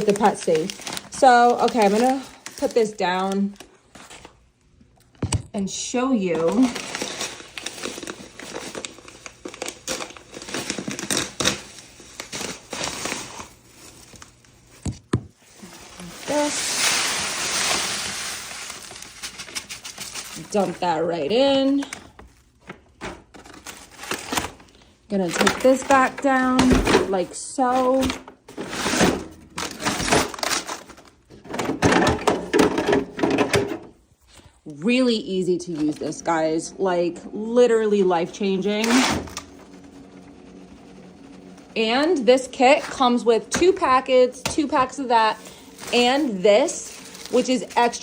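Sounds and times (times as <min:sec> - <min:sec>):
plastic litter tray rustling and scraping: 0:00.0 - 0:04.4, 0:06.2 - 0:34.0, 0:35.6 - 0:48.0
plastic packaging crinkling: 0:00.0 - 0:04.4, 0:06.2 - 0:31.6, 0:38.3 - 0:48.0.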